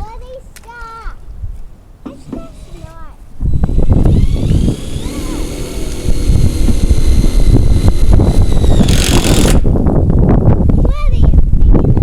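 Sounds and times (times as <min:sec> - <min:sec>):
heavy low rumble: 0:02.4 - 0:12.0
cordless drill motor whine: 0:03.4 - 0:09.7.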